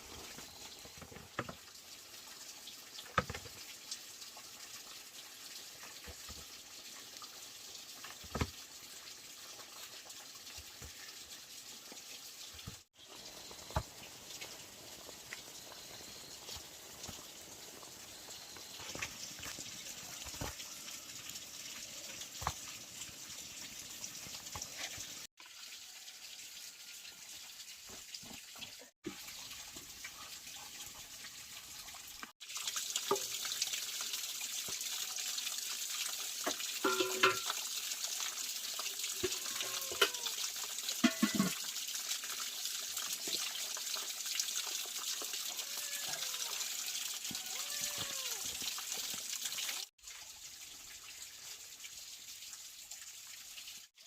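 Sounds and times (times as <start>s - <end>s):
running water rushing: 26.8s - 51.9s.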